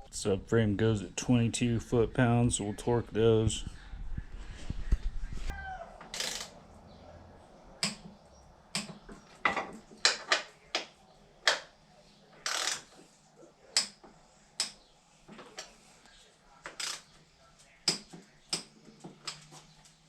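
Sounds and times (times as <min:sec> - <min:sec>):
torque wrench ratcheting clicks: 0:06.1 - 0:06.5, 0:12.5 - 0:12.9.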